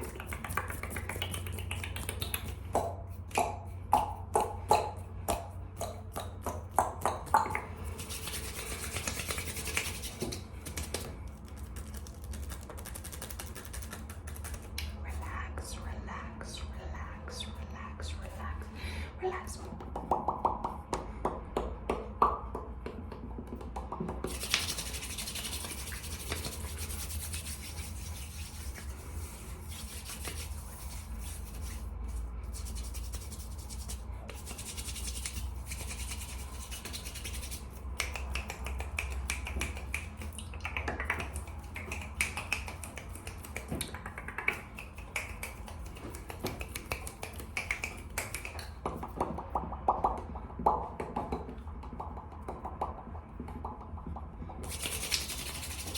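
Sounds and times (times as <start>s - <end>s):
rapid hand rubbing: 0.0s - 3.3s, 7.6s - 14.8s, 24.3s - 48.8s, 54.6s - 55.9s
finger snaps and clicks: 0.1s - 7.9s, 8.9s - 15.7s, 37.2s - 50.9s.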